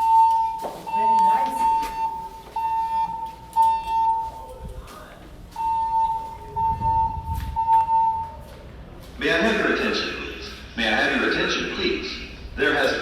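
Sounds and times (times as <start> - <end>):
fire alarm beeping: 0.0 - 8.6.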